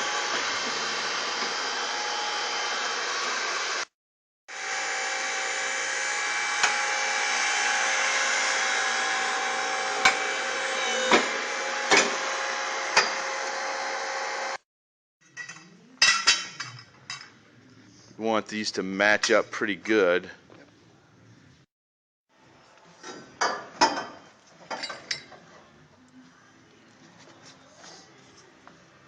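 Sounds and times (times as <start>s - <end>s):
power tool whirring: 0.0s - 3.9s, 4.5s - 14.6s.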